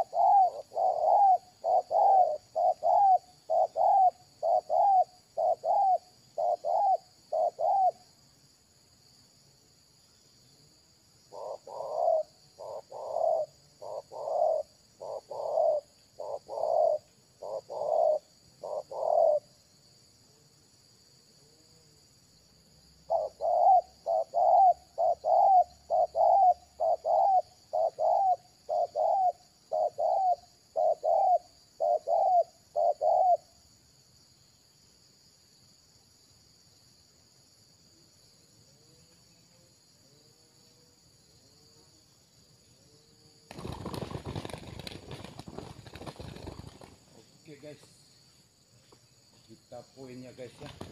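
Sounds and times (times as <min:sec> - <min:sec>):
dove cooing: 0:00.0 - 0:08.0, 0:11.3 - 0:19.6, 0:23.0 - 0:33.6
high insect drone: 0:00.0 - 0:50.9.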